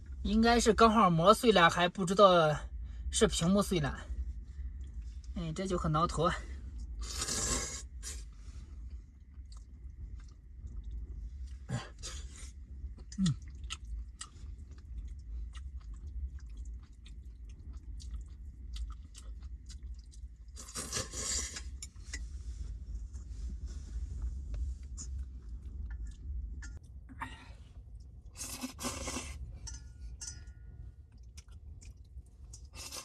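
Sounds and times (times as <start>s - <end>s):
person chewing: 6.8s - 8.3s, 9.2s - 22.3s.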